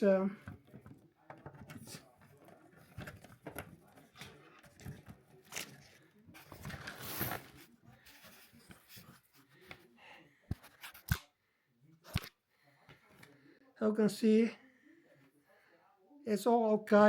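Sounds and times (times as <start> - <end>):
cables clicking and rustling: 0.4 - 9.8.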